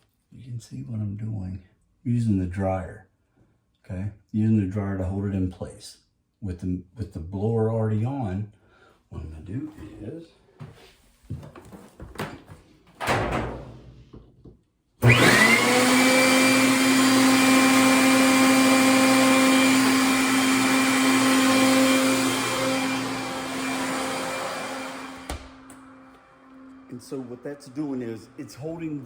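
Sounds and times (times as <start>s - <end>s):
leaf blower whine and air rush: 15.0s - 29.0s.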